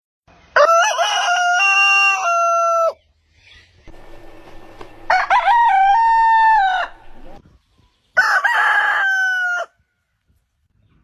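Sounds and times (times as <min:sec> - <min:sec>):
rooster crowing: 0:00.6 - 0:03.0, 0:03.9 - 0:07.4, 0:08.2 - 0:09.8.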